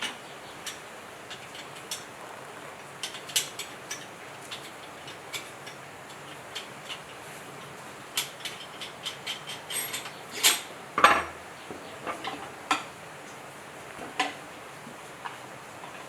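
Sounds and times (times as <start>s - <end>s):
metal tools clinking and tapping: 3.0s - 11.4s.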